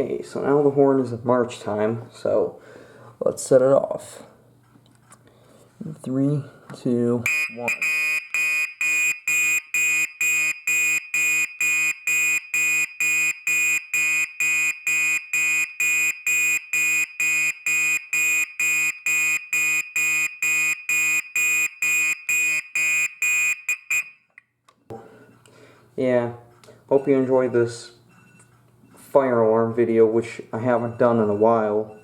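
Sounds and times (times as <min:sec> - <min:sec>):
pulsing fire alarm horn: 0:07.3 - 0:24.3.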